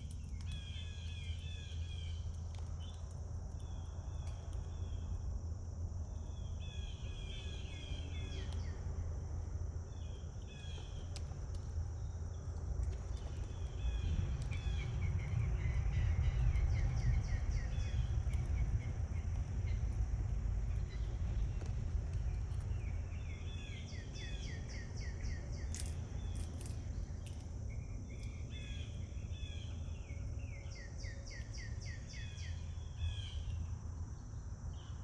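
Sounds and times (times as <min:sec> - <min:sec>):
small birds chirping: 0:00.0 - 0:05.3, 0:06.1 - 0:08.8, 0:09.9 - 0:35.0
high insect drone: 0:00.0 - 0:35.0.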